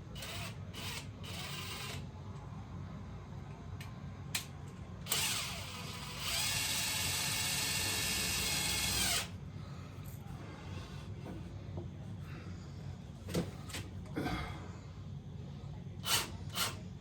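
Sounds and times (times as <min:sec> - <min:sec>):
screw gun whirring: 0:00.1 - 0:02.0, 0:05.0 - 0:09.3, 0:16.0 - 0:16.8.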